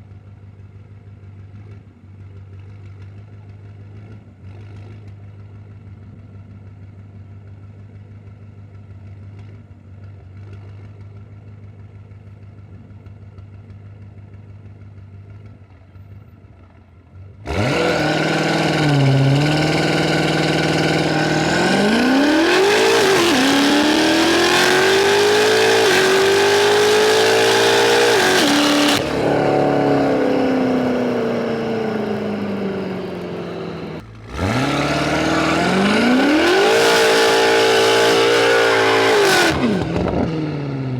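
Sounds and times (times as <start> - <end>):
car engine revving and accelerating: 17.4 - 40.9.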